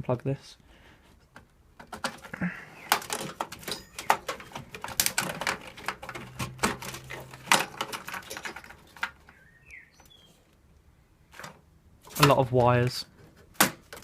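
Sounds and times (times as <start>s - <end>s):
cables and connectors rattling: 1.2s - 9.4s.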